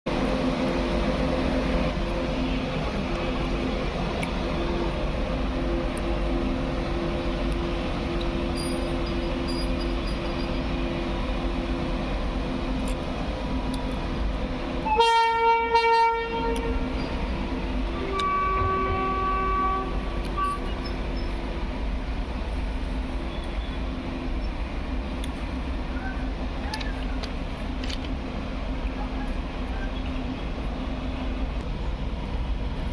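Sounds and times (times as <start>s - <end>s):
electric locomotive humming: 0.1s - 32.9s
locomotive horn blast: 14.8s - 16.9s, 17.9s - 20.8s.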